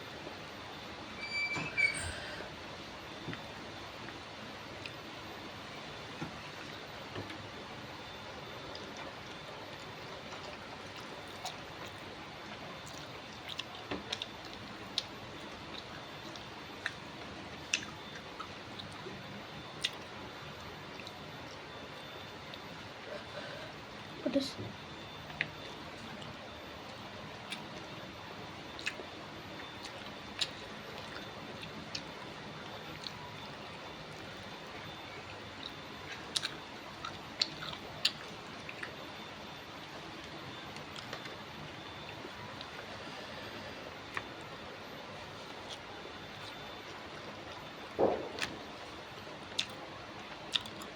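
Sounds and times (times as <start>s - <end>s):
mouth clicks and chewing smacks: 8.7s - 17.0s, 17.6s - 19.0s, 19.8s - 20.1s, 28.8s - 29.0s, 29.6s - 32.2s, 35.6s - 39.0s, 49.5s - 50.9s
person chewing: 12.8s - 14.3s, 36.1s - 38.9s, 49.5s - 49.8s, 50.5s - 50.9s.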